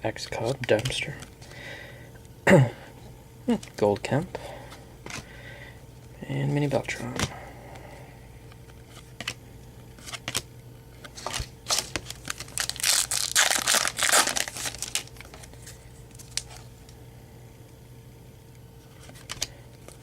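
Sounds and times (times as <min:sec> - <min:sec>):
cards clicking and rustling: 0:00.4 - 0:01.5, 0:03.5 - 0:04.1, 0:05.0 - 0:05.3, 0:08.5 - 0:17.0, 0:18.8 - 0:20.0
wrapper crinkling and tearing: 0:11.1 - 0:16.7.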